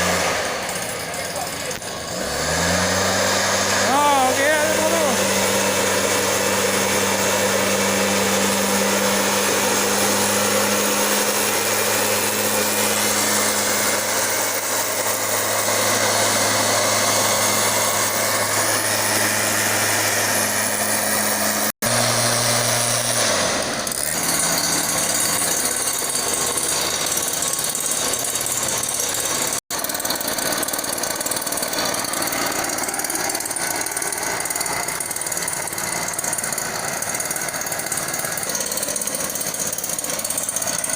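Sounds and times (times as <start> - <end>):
blower rushing: 0.0 - 40.9
small petrol engine running: 0.0 - 40.9.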